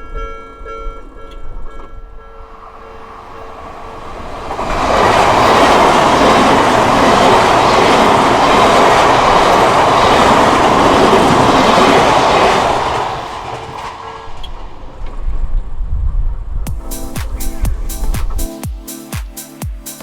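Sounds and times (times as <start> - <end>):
crossing warning bell ringing: 0.0 - 14.8
train passing: 0.0 - 19.6.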